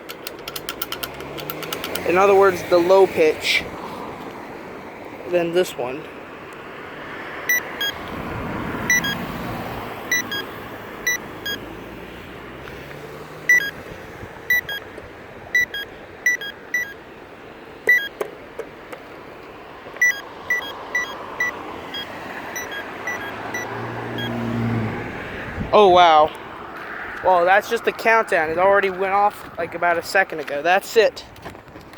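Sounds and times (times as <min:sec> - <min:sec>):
street traffic: 0:00.0 - 0:31.9
crosswalk button beeps: 0:07.5 - 0:08.0, 0:08.9 - 0:09.3, 0:10.1 - 0:11.7, 0:13.5 - 0:13.8, 0:14.5 - 0:14.9, 0:15.6 - 0:17.0, 0:17.9 - 0:18.3, 0:20.0 - 0:24.4.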